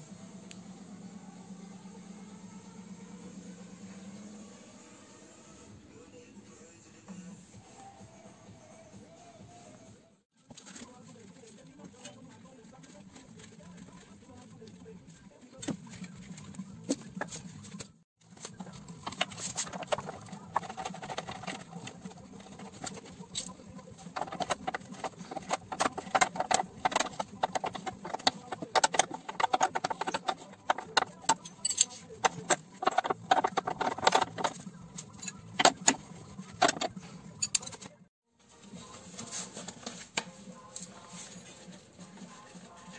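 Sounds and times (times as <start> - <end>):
metal tools clinking: 19.1 - 35.9, 36.6 - 37.9.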